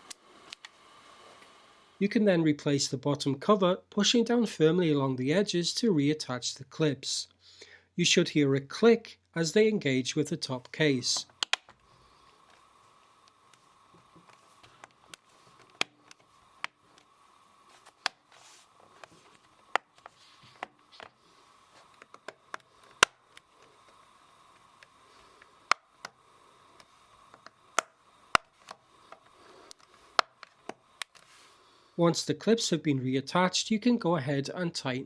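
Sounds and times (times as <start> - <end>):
plastic clips snapping: 11.2 - 11.8, 22.0 - 23.7, 26.8 - 31.2.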